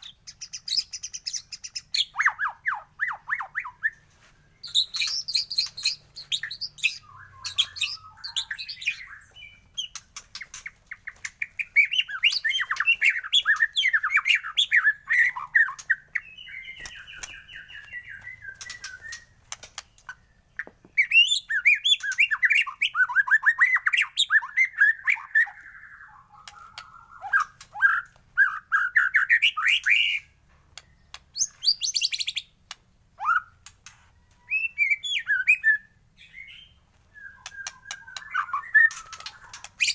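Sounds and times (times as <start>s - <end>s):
bird singing warbling phrases: 0.0s - 39.9s
bird harsh chattering: 37.4s - 39.9s.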